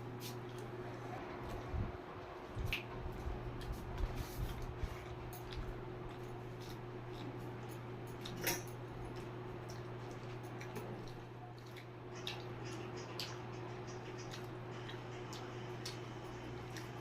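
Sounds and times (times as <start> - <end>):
steady low hum: 0.0 - 17.0
person chewing: 3.6 - 8.4, 9.1 - 17.0.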